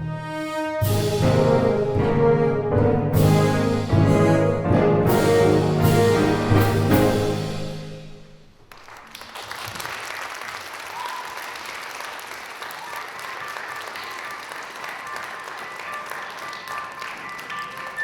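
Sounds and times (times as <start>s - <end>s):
orchestral music: 0.0s - 8.7s
audience applauding: 8.6s - 18.0s.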